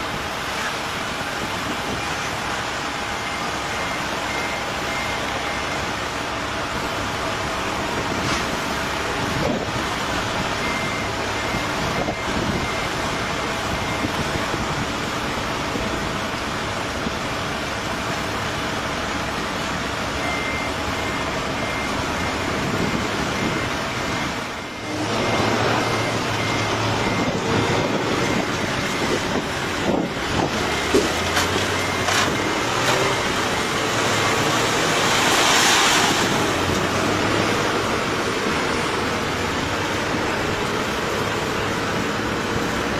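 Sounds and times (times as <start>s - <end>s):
heavy vehicle engines rumbling: 0.0s - 42.9s
reversing alarm beeping: 1.1s - 42.9s.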